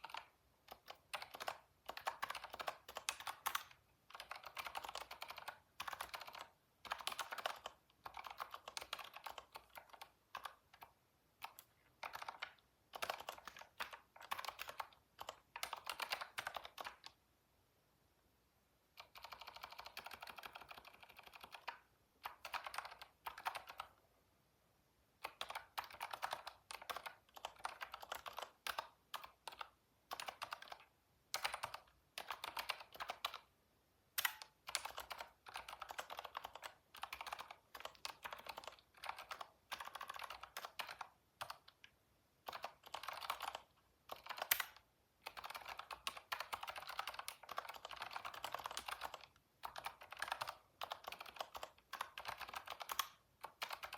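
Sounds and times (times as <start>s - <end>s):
typing on computer keyboard: 0.0s - 17.2s, 18.9s - 24.0s, 25.2s - 33.5s, 34.2s - 53.9s.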